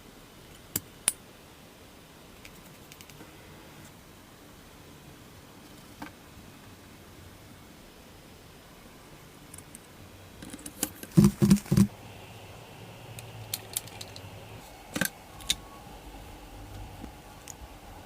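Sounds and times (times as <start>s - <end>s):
low steady hum: 0.0s - 18.0s.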